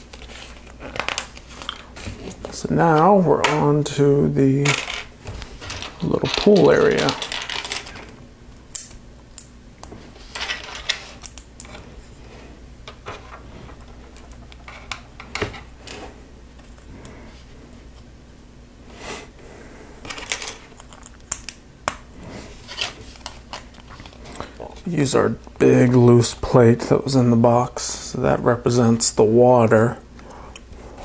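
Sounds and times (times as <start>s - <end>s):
plastic bricks clicking and clattering: 4.6s - 8.0s.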